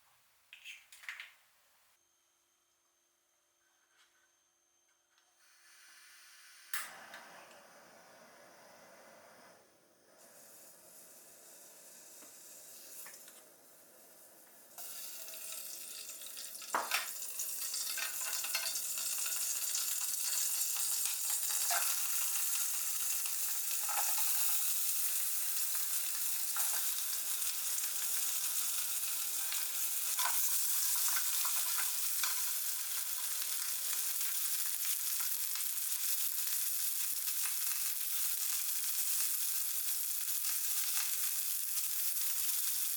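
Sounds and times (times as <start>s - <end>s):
food sizzling in a tin: 10.2s - 42.9s.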